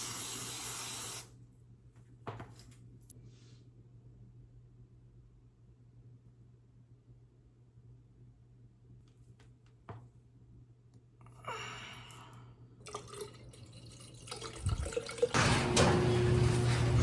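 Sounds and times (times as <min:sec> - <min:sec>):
water running from tap: 0:00.0 - 0:01.2, 0:12.9 - 0:17.0.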